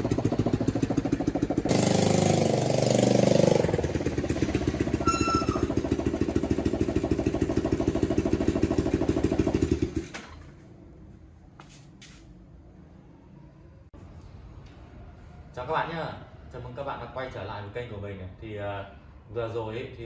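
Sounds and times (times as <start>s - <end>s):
unmuffled motorbike engine pulsing: 0.0s - 10.2s.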